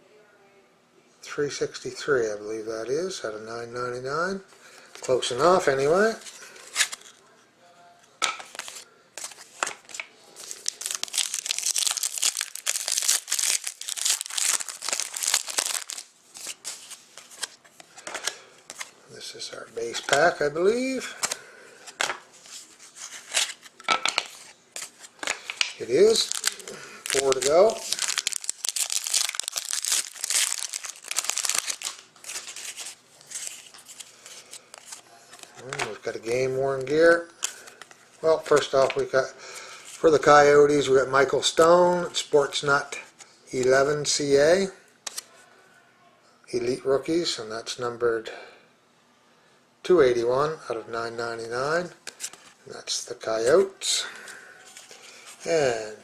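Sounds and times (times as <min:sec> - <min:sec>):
wrapper tearing and crinkling: 0:08.5 - 0:17.5, 0:22.9 - 0:36.0.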